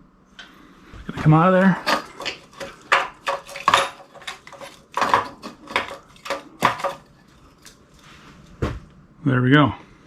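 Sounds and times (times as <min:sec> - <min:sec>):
tools and metal parts clanking: 0:01.2 - 0:08.0.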